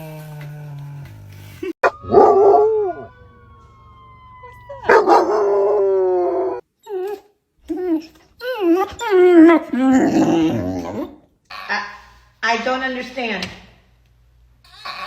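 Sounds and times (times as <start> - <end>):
dog howling: 1.8 - 7.1, 7.7 - 11.2
dog yowl: 14.7 - 15.0.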